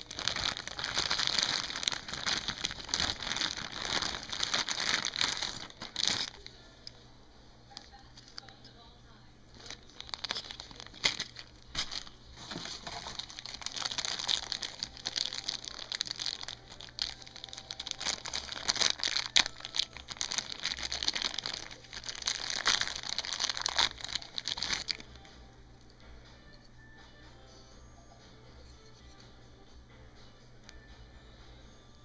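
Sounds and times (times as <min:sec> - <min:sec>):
packaging crinkling and rustling: 0:00.0 - 0:06.6, 0:09.5 - 0:25.1.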